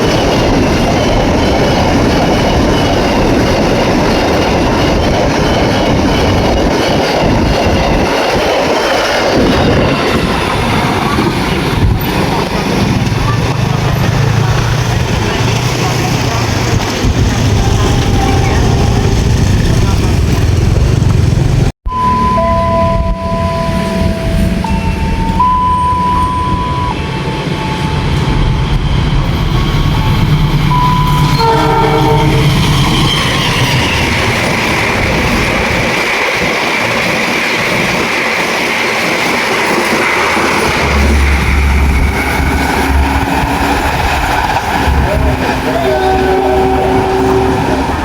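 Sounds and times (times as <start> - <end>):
train rushing past: 0.0 - 48.0
train horn: 17.4 - 19.4, 22.7 - 25.4, 30.7 - 32.8, 45.0 - 48.0.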